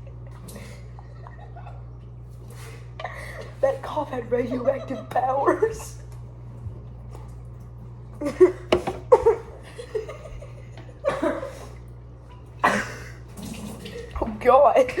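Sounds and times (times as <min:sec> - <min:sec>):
person coughing: 0:11.0 - 0:11.7, 0:12.6 - 0:13.2.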